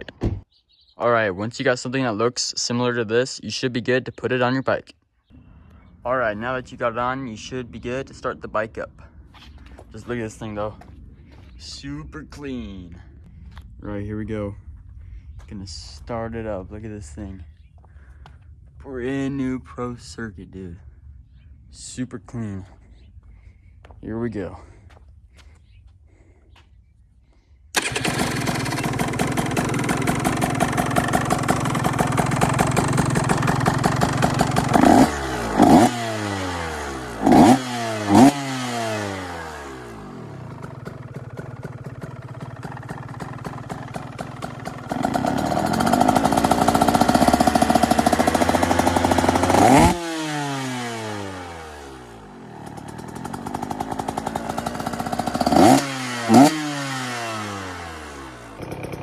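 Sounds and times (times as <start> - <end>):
dirt bike engine revving: 27.8 - 59.0.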